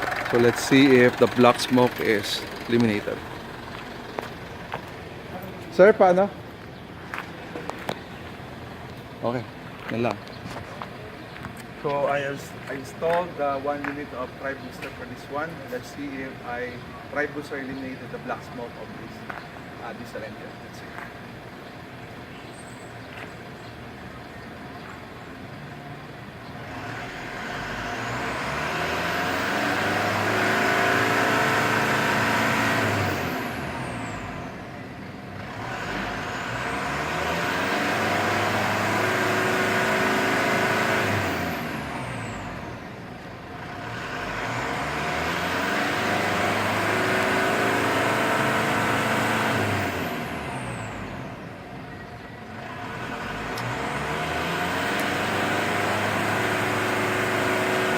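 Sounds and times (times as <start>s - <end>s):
diesel engine revving: 0.0s - 10.2s, 26.1s - 57.9s.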